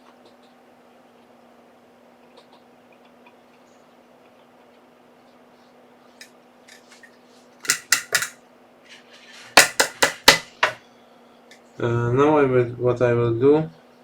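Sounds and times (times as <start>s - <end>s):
faint steady hum: 0.0s - 14.0s
hand tools clacking on workbench: 7.6s - 8.4s, 9.6s - 10.8s.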